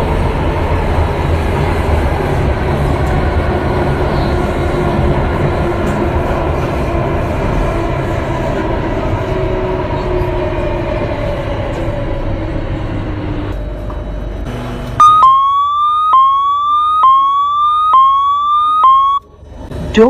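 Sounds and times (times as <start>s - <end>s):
train motor whine: 11.5s - 19.9s
door warning beeps: 15.0s - 19.3s.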